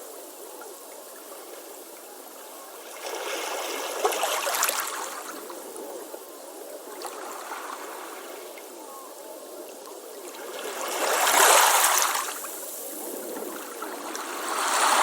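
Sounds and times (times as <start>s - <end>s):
ocean waves on beach: 10.2s - 15.0s.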